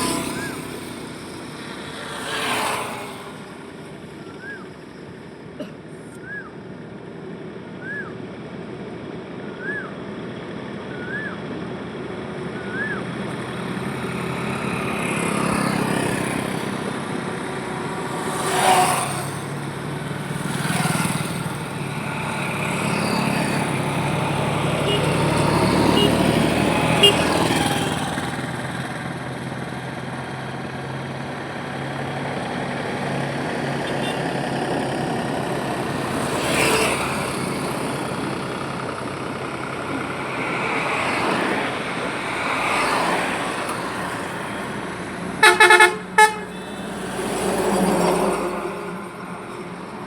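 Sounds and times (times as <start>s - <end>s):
road traffic passing: 0.0s - 50.0s
vehicle horn honking: 24.7s - 27.5s, 33.8s - 34.2s, 45.4s - 47.0s.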